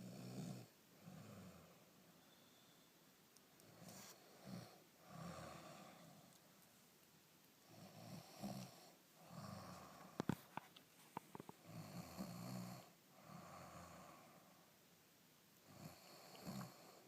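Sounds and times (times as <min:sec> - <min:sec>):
person snoring: 0:00.0 - 0:01.8, 0:03.7 - 0:06.3, 0:07.7 - 0:10.3, 0:15.7 - 0:17.0.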